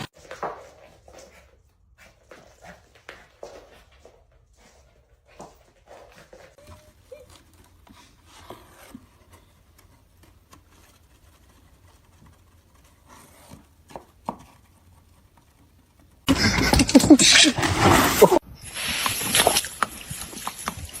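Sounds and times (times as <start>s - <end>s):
light taps and scuffs: 0.0s - 16.2s.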